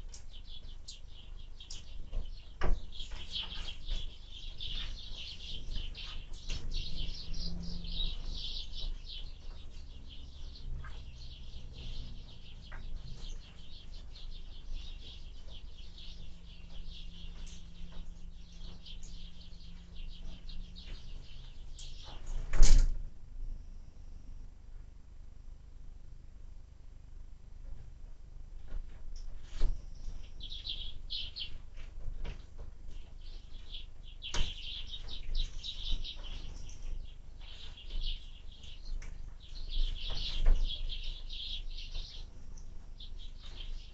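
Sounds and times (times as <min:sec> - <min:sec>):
small birds chirping: 0:00.0 - 0:22.8, 0:29.0 - 0:43.9
wind rumble on microphone: 0:04.0 - 0:23.1.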